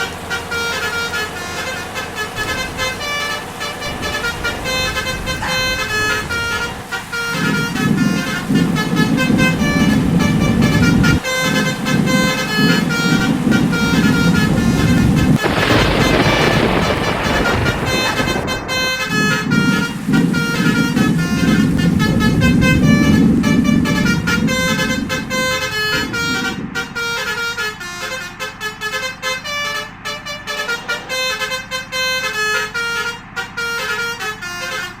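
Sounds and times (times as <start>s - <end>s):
multi-tone horn melody: 0.0s - 35.0s
vehicle engine rumble: 0.0s - 35.0s.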